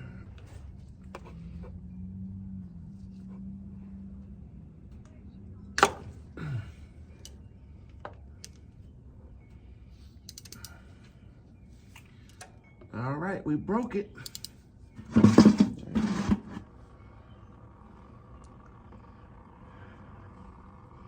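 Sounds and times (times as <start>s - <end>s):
ratchet clicks: 10.2s - 10.8s, 14.2s - 14.6s.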